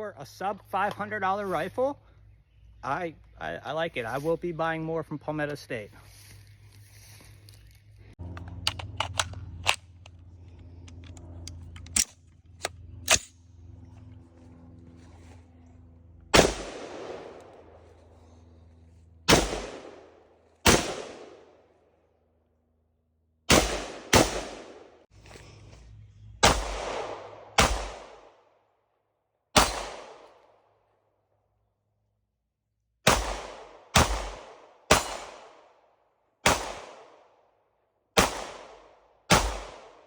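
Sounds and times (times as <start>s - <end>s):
rifle shots with echo: 16.3s - 17.9s, 19.3s - 21.6s, 23.5s - 25.0s, 26.4s - 28.4s, 29.6s - 30.4s, 33.0s - 35.8s, 36.4s - 37.4s, 38.2s - 40.0s.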